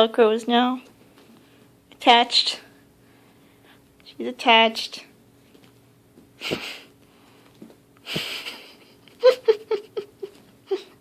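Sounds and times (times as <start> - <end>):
woman laughing under her breath: 8.0 - 11.0.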